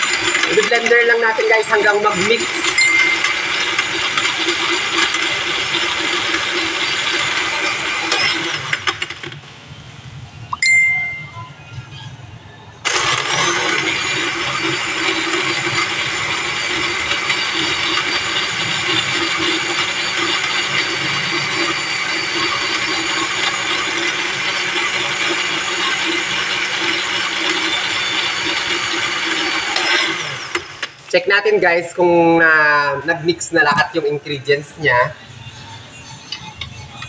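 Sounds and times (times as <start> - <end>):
electric blender running: 0.0 - 9.5, 12.8 - 31.1.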